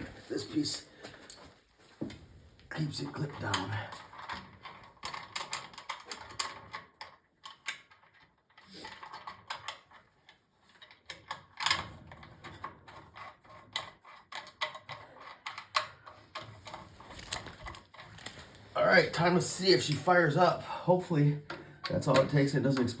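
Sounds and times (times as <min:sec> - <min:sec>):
clicks and knocks of small parts: 0:03.3 - 0:18.6.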